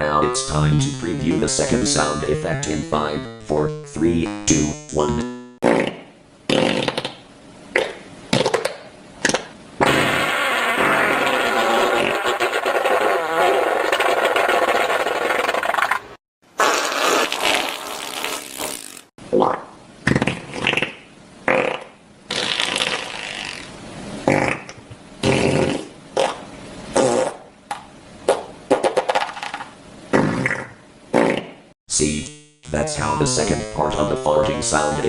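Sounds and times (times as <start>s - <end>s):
rasping fart noise: 1.0s - 7.2s, 7.8s - 15.9s, 16.6s - 27.5s, 30.1s - 32.8s
short farts: 5.0s - 7.2s, 9.2s - 15.8s, 16.6s - 27.5s, 30.1s - 31.6s.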